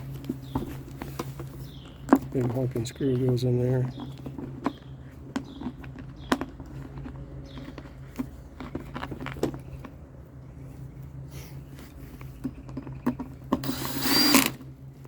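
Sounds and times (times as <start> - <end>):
steady low hum: 13.6 - 15.0.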